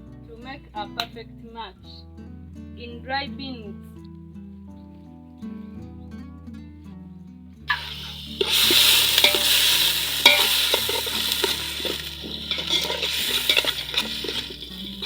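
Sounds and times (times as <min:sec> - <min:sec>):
food sizzling in hot oil: 0:07.7 - 0:15.0
spoon stirring a pan: 0:07.7 - 0:15.0.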